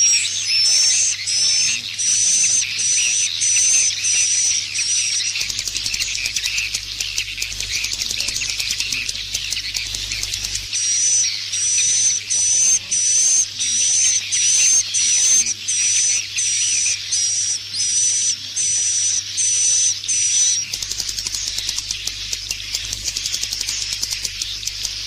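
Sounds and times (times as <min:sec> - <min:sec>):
buzzy bird chirp: 0:00.0 - 0:25.0
swiftlets chattering: 0:20.5 - 0:25.0.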